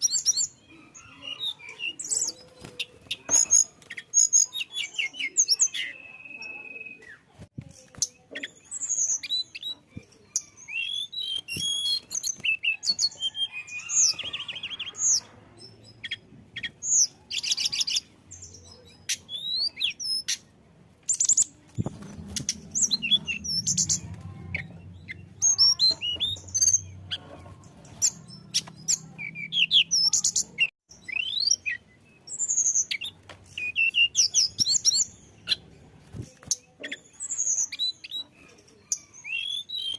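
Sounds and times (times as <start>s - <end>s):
bird singing high chirps and whistles: 3.1s - 7.3s, 8.0s - 15.2s, 16.0s - 20.4s, 28.0s - 35.6s, 39.0s - 39.9s
faint low hum: 21.6s - 28.1s.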